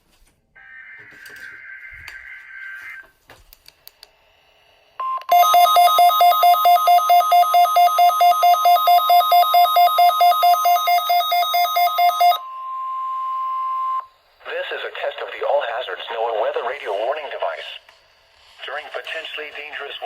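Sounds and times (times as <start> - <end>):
steady alarm tone: 5.0 - 14.2.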